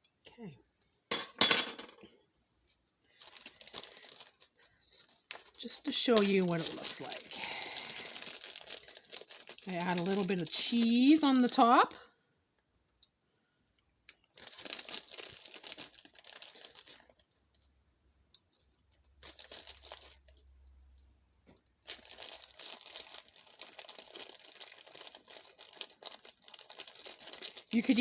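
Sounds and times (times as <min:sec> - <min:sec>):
plastic packaging crinkling: 0:03.1 - 0:11.6, 0:14.1 - 0:17.7, 0:19.0 - 0:20.5, 0:21.8 - 0:28.0.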